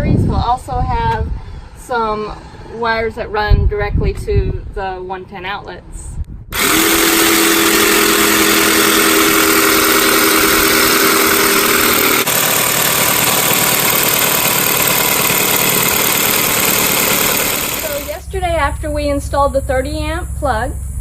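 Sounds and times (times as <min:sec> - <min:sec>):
power tool motor running: 0:06.5 - 0:18.2.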